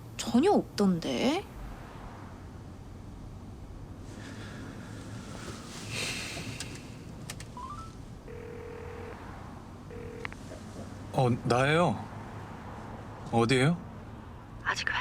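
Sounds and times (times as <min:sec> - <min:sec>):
ringback tone beeps: 0:07.6 - 0:09.2, 0:09.9 - 0:10.3.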